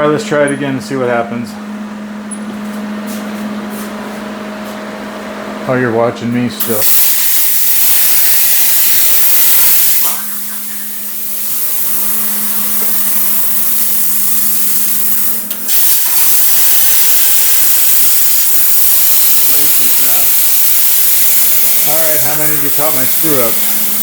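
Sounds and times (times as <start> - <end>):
steady hum: 0.0 - 24.0
plasma cutter torch hissing: 6.6 - 24.0.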